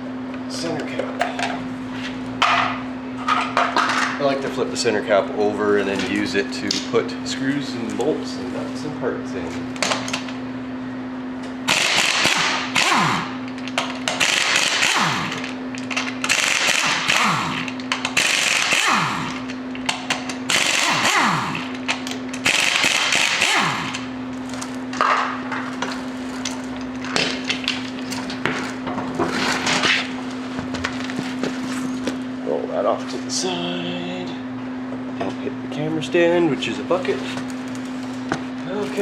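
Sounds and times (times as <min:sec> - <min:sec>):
steady hum: 0:00.0 - 0:39.0
impact wrench hammering: 0:11.7 - 0:24.2.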